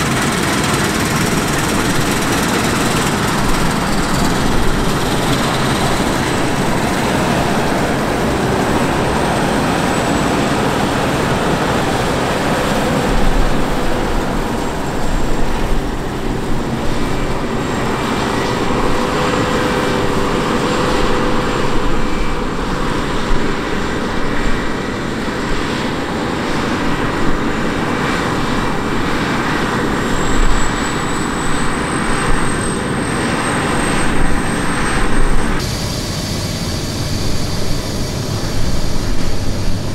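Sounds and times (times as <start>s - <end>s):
vehicle engine running: 0.0s - 22.4s.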